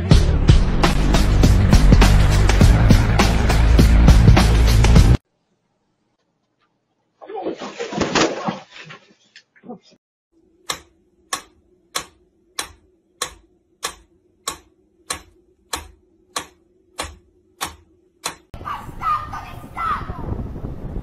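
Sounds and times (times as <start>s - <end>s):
sharp ticking: 10.6s - 18.6s.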